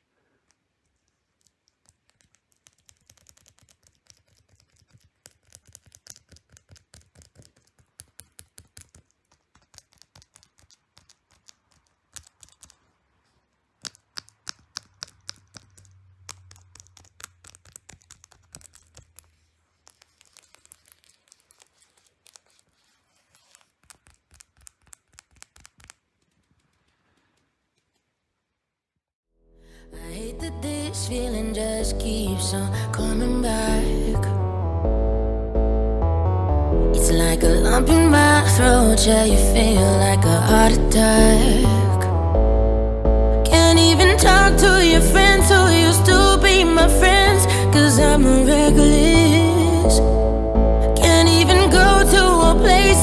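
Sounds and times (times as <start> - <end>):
laptop keyboard clicks: 1.3 - 13.0, 13.8 - 22.5, 23.4 - 28.0.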